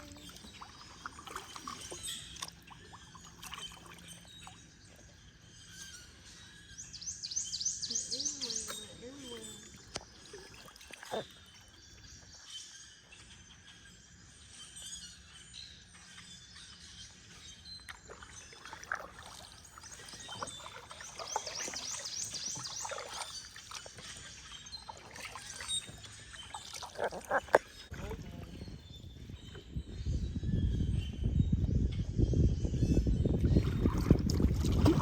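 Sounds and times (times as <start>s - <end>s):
paddle strokes in water: 0.0s - 4.6s, 17.9s - 28.2s
birds chirping: 0.0s - 34.3s.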